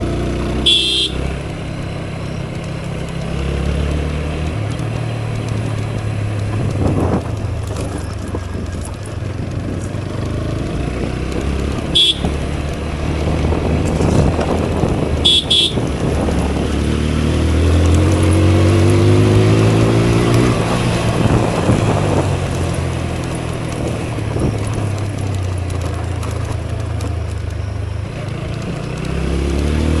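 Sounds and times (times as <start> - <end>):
motorcycle engine running: 0.0 - 30.0
vehicle horn beeping: 0.4 - 1.5, 11.6 - 12.7, 14.9 - 16.5.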